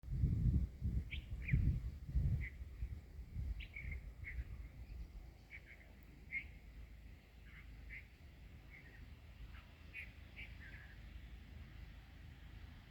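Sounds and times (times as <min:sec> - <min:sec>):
small birds chirping: 0:01.0 - 0:11.4.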